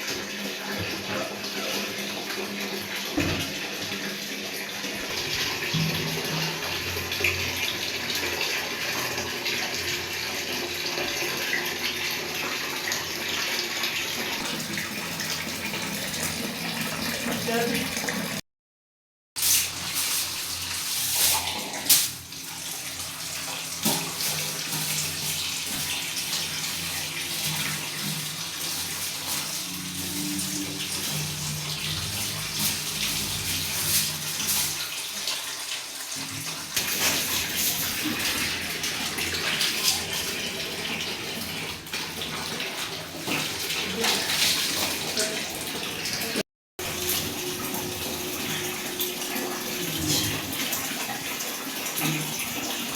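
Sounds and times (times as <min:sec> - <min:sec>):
water running from a tap: 0:00.0 - 0:18.4, 0:19.4 - 0:52.9.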